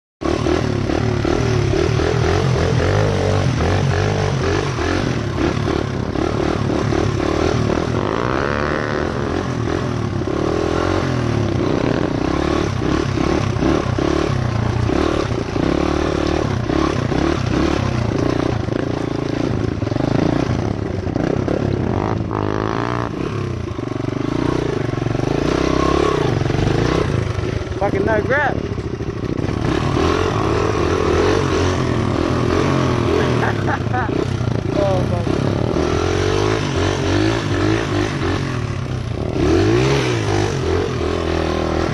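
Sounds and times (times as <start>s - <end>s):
dirt bike engine running: 0.2s - 41.9s.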